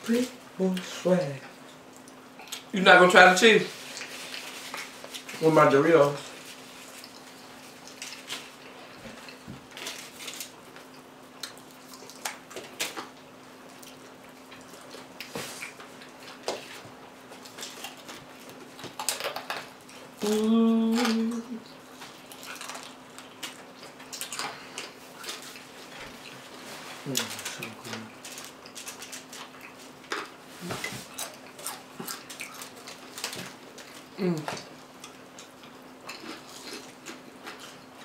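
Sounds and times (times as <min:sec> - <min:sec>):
chips crunching: 0:17.4 - 0:26.0, 0:27.1 - 0:38.0
person humming mmm: 0:20.2 - 0:21.8, 0:34.2 - 0:34.6.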